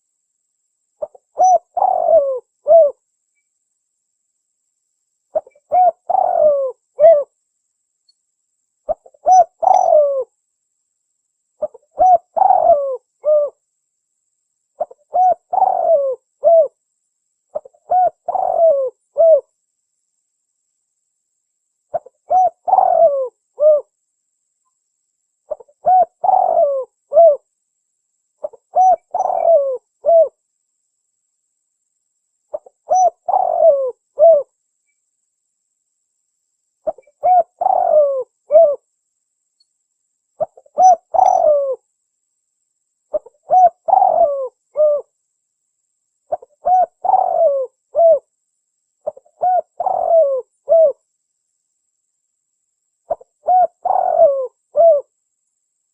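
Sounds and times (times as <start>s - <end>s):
dove cooing: 1.0s - 3.0s, 5.3s - 7.3s, 8.9s - 10.3s, 11.6s - 13.6s, 14.8s - 16.8s, 17.5s - 19.5s, 21.9s - 23.9s, 25.5s - 27.4s, 28.4s - 30.4s, 32.5s - 34.5s, 36.8s - 38.8s, 40.4s - 41.8s, 43.1s - 45.1s, 46.3s - 48.3s, 49.0s - 51.0s, 53.1s - 55.1s.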